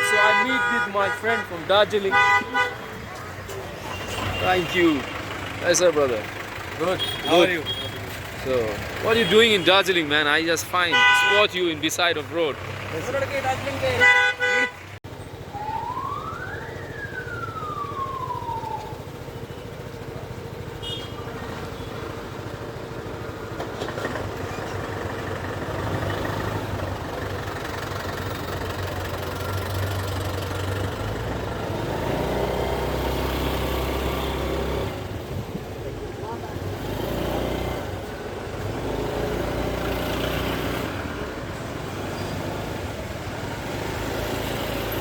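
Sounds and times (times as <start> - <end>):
car horn: 0.0 - 5.2, 6.9 - 8.1, 9.0 - 10.0, 10.7 - 11.8, 13.8 - 15.0, 20.8 - 22.0
vehicle engines and tyre noise: 0.0 - 45.0
rising and falling siren tone: 15.5 - 19.1.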